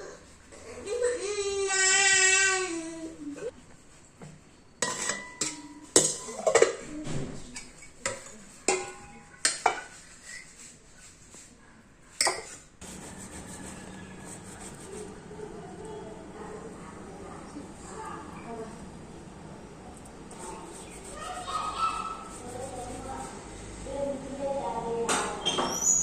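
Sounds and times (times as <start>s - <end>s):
dishes and utensils clattering: 4.8s - 10.6s.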